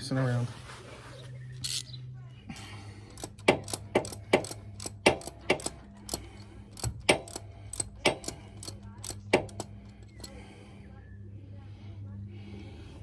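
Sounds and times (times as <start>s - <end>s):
low steady hum: 0.0s - 13.0s
ratchet wrench clicking: 1.6s - 1.9s, 3.1s - 10.4s.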